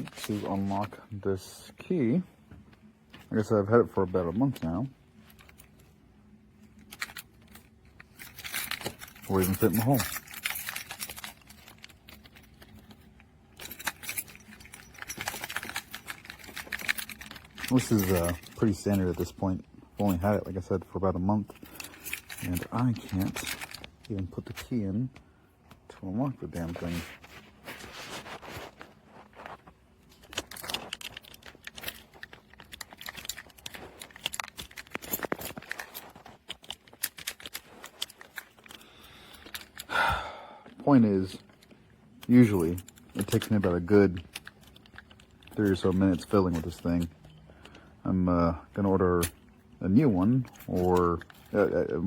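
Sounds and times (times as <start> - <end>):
key scraping in lock keyhole: 6.7 - 24.9, 27.7 - 39.9, 41.1 - 47.9.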